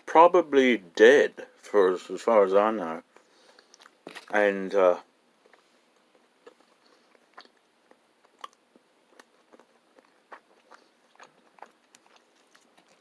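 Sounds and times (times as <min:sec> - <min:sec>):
wet chewing clicks: 0:05.4 - 0:13.0.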